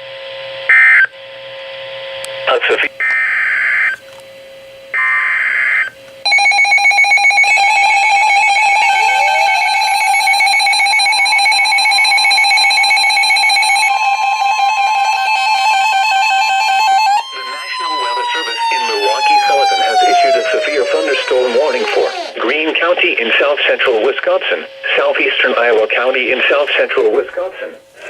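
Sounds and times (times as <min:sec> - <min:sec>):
pulsing electronic alert tone: 0:06.3 - 0:22.4
harsh digital screeches: 0:17.6 - 0:22.4.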